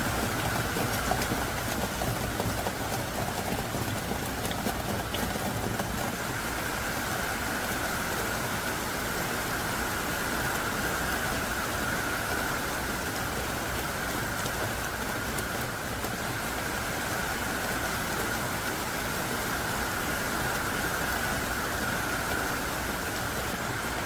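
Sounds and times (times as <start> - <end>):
raindrops ticking: 0.0 - 6.5
heavy rain pouring: 0.0 - 24.0.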